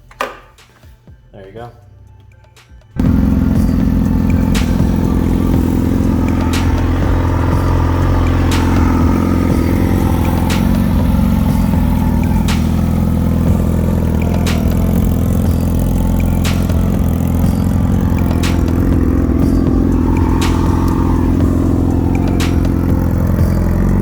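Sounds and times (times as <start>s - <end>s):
motorcycle engine running: 3.0s - 24.0s.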